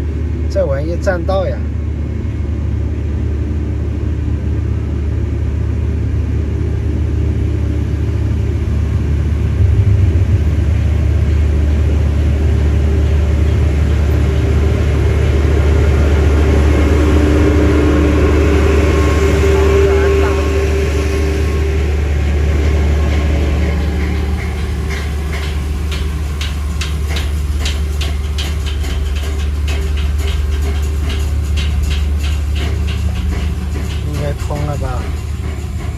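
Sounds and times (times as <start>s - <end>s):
engine and road noise drone: 0.0s - 35.9s
rising hum: 1.8s - 26.4s.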